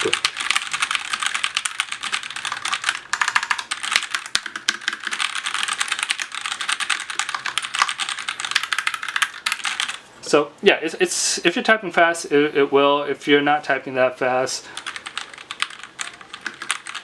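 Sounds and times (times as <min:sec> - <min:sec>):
fast mechanical keyboard typing: 0:00.0 - 0:10.0, 0:14.8 - 0:17.0.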